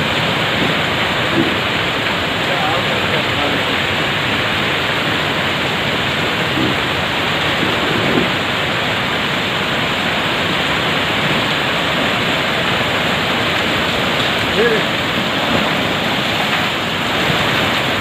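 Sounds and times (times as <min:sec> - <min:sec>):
heavy storm rain: 0:00.0 - 0:18.0
wind: 0:00.0 - 0:18.0.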